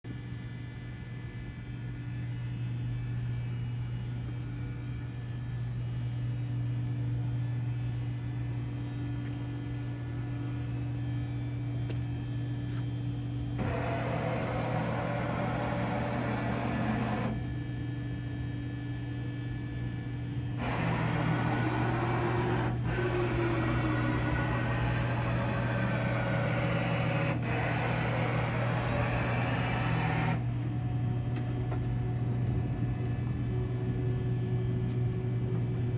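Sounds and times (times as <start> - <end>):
lathe electrical hum: 0.1 - 35.9
wavering mechanical whirring: 13.0 - 35.9.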